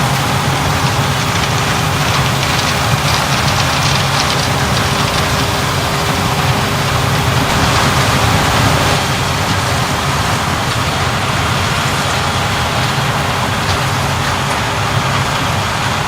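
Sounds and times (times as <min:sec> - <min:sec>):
combine harvester engine drone: 0:00.0 - 0:16.0
thin steady whine: 0:00.0 - 0:16.0
threshing machinery rushing hiss: 0:06.7 - 0:10.1.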